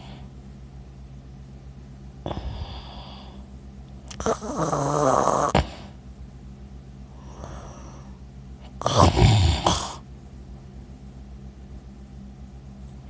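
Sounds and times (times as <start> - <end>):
soft breath: 2.3 - 3.6, 7.0 - 8.3
man snoring loudly: 4.2 - 5.8, 8.8 - 10.0.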